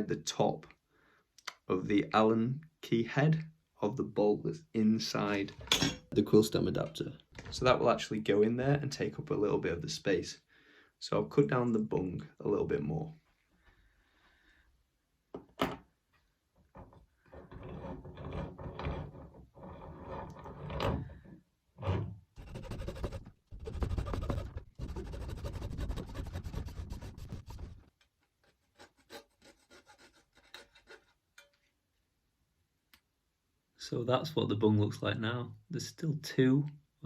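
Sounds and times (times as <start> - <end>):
rasping plastic cutting strokes: 21.9 - 31.2.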